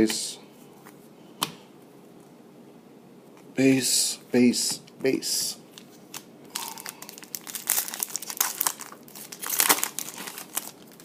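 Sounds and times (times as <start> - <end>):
foil wrapper crinkling: 5.8 - 11.0.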